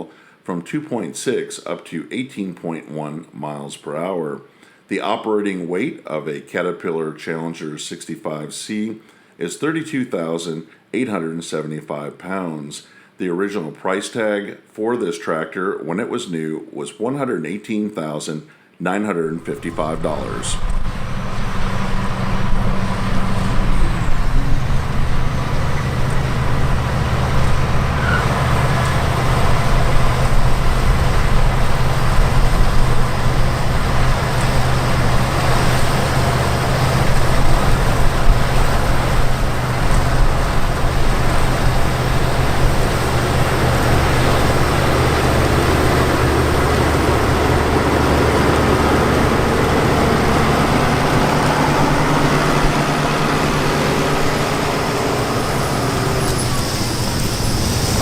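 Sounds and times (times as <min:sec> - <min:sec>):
diesel machinery engine drone: 0:19.4 - 0:58.0.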